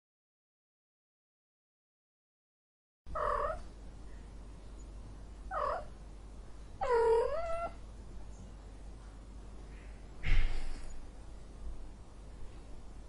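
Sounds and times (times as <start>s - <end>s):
angry cat yowling: 3.2s - 3.6s, 5.5s - 5.9s, 6.8s - 7.8s.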